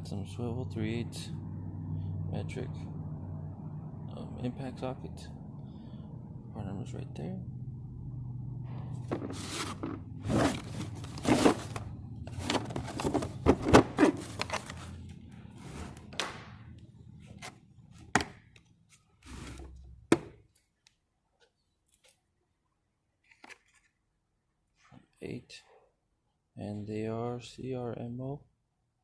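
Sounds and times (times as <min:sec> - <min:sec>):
packaging rustling: 0:09.1 - 0:15.1.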